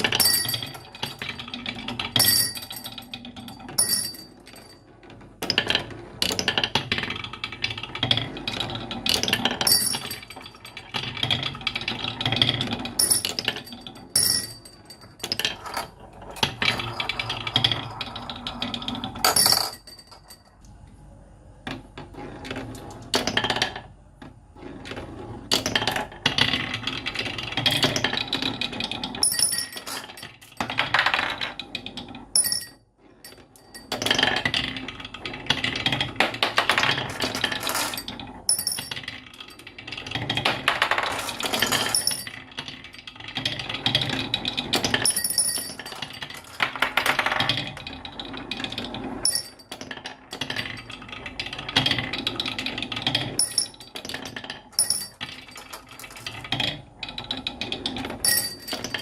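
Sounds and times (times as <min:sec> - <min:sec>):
marbles rolling on wooden track: 0:00.0 - 0:20.6, 0:21.6 - 0:59.0
marbles clicking and knocking: 0:25.5 - 0:59.0.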